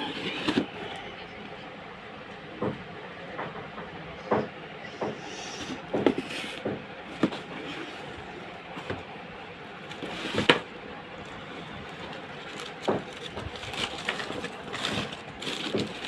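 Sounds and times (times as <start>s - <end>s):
knocks and bumps of handling: 5.9s - 7.6s, 12.0s - 16.0s
packaging rustle: 11.2s - 16.0s.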